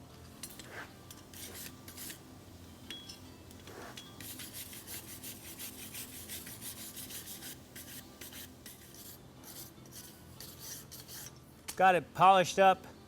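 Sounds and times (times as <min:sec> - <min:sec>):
wire brush scrubbing metal: 0:00.5 - 0:02.2, 0:03.7 - 0:11.3.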